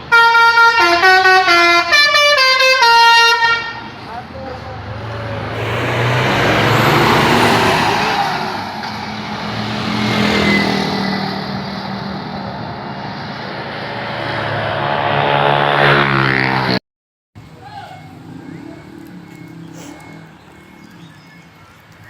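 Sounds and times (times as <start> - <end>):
bus diesel engine revving: 3.8 - 16.8, 18.1 - 21.7.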